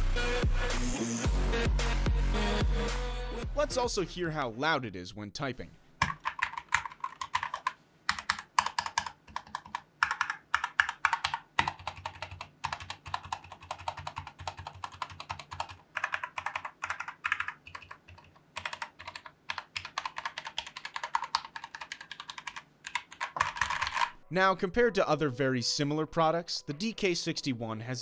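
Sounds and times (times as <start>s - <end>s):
mechanical keyboard typing: 6.0s - 24.2s.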